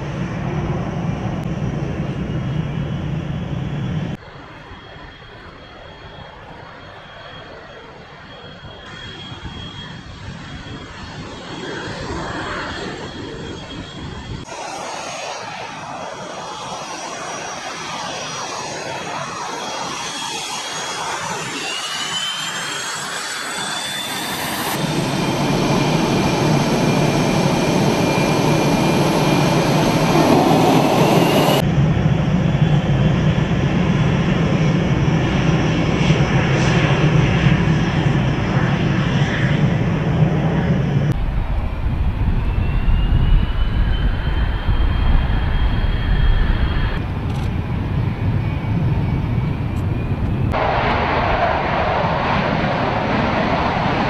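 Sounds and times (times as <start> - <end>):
fighter jet engines roaring: 0.0 - 54.0
high turbine whine: 0.0 - 54.0.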